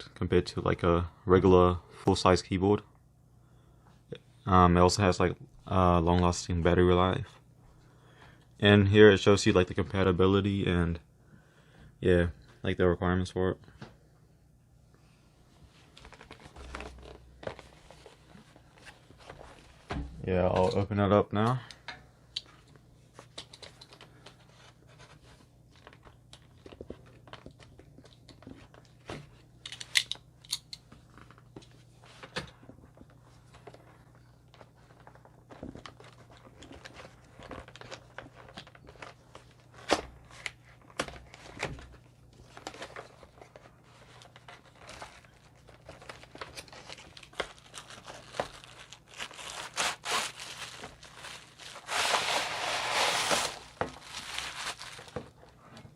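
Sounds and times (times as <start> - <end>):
paper and cardboard tearing: 47.3 - 55.1.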